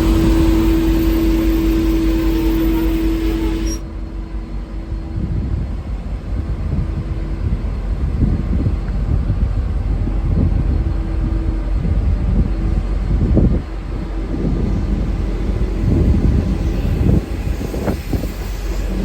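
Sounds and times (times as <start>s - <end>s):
locomotive air horn: 0.0s - 3.8s
diesel engine rumbling: 0.0s - 8.8s, 9.5s - 19.0s.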